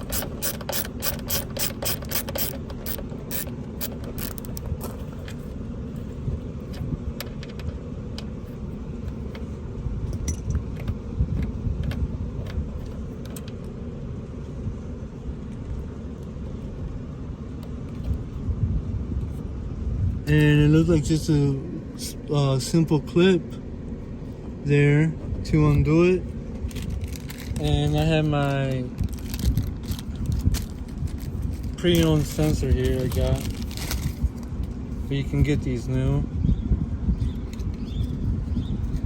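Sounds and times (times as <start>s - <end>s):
socket ratchet clicking: 0.0s - 4.7s
low rumble: 0.0s - 39.0s.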